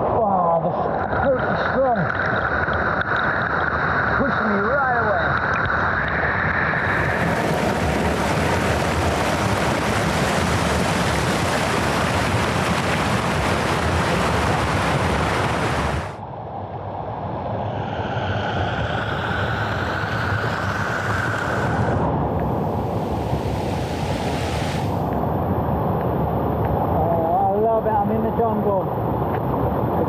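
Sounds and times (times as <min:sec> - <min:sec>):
waterfall rushing: 0:06.6 - 0:16.2, 0:19.0 - 0:25.7
high-pitched drone: 0:17.6 - 0:25.0.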